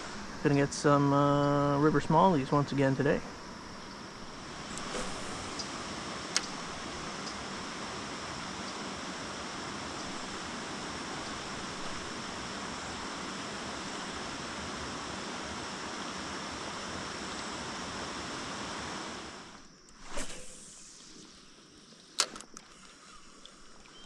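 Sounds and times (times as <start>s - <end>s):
insects droning: 0.0s - 24.0s.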